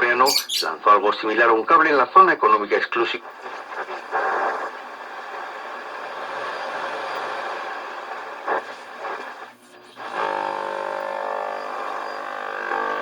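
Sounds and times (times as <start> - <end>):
shortwave radio static: 0.0 - 13.0
buzzing signal of held tones: 11.0 - 13.0.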